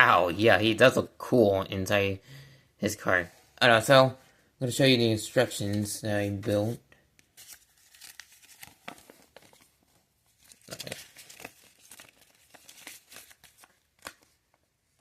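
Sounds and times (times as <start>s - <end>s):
paper rustling and crinkling: 7.2s - 15.0s.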